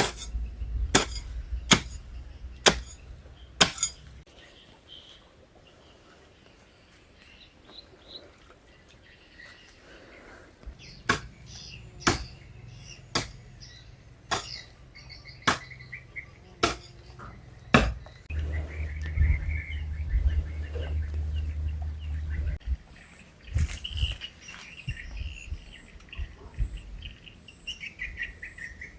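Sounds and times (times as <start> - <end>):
hand tool striking: 0.0 - 3.0, 3.6 - 4.1, 11.0 - 11.3, 12.0 - 12.4, 13.1 - 13.4, 14.3 - 14.6, 15.5 - 15.7, 16.6 - 17.0
small birds chirping: 0.0 - 28.9
low steady hum: 16.3 - 22.8.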